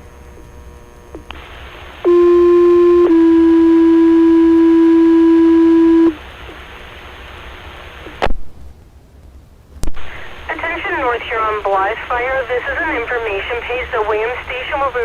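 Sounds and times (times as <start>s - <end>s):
radio hiss: 1.3s - 2.1s, 6.1s - 8.3s, 9.8s - 15.0s
two-tone radio paging tones: 2.0s - 6.2s.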